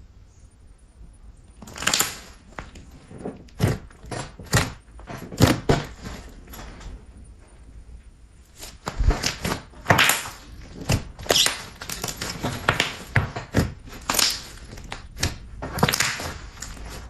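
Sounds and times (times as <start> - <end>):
slime squelching by hand: 8.5 - 17.0.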